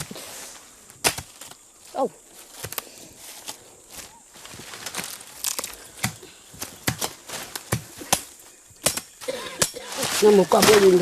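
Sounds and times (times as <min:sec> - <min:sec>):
hand tool chopping soil: 0:01.0 - 0:01.6, 0:05.4 - 0:11.0.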